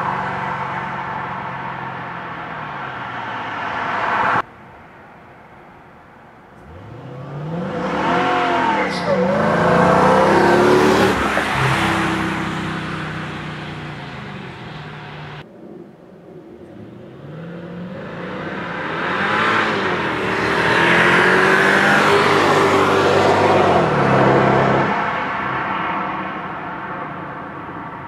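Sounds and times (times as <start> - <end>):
car engine driving past: 6.6 - 15.4.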